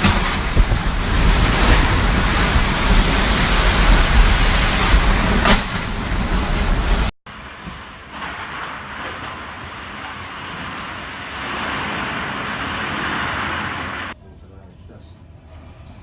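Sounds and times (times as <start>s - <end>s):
wind gusts buffeting microphone: 0.0s - 7.1s
rain: 0.0s - 14.2s
sharp crack: 0.0s - 14.2s.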